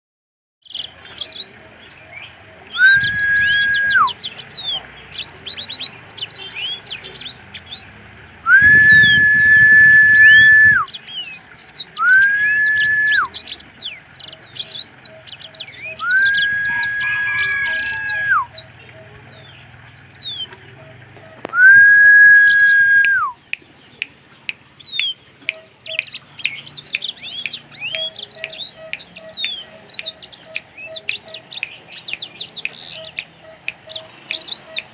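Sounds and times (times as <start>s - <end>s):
songbird chirping and trilling: 0.6s - 34.9s
long whistled bird note: 8.5s - 10.9s, 16.0s - 18.5s.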